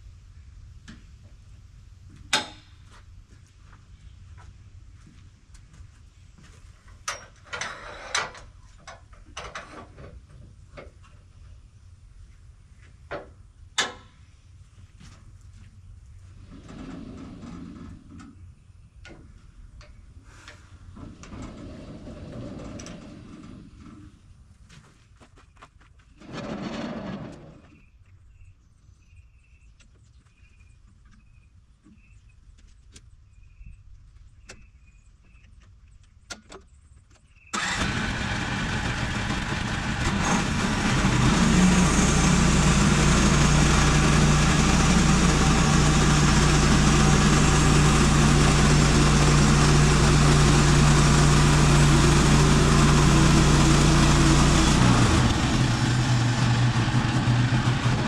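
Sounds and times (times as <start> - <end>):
engine starting and running: 16.4 - 18.4, 20.4 - 24.2, 26.2 - 27.7, 37.5 - 58.0
faint clicks and chirps: 29.3 - 37.6.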